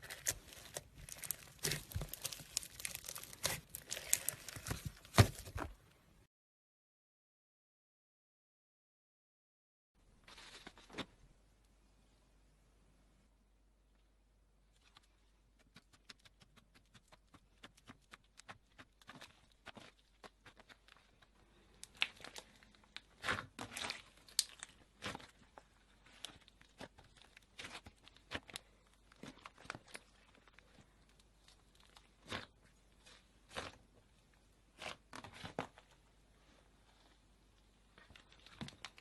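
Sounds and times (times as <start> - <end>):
slime squeezed by hand crackling: 0.0 - 5.3.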